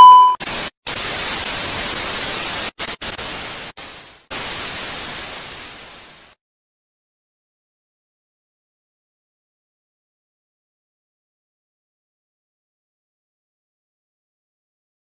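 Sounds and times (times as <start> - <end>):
static hiss: 0.4 - 6.4.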